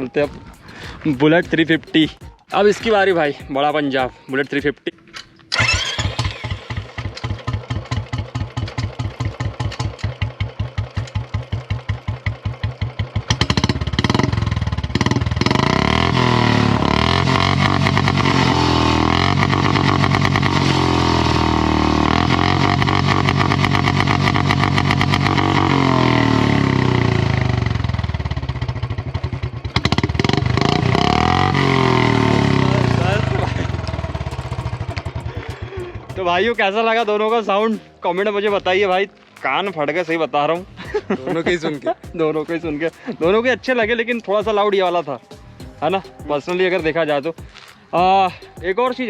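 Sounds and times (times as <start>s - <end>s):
motorcycle engine revving: 5.5s - 37.4s.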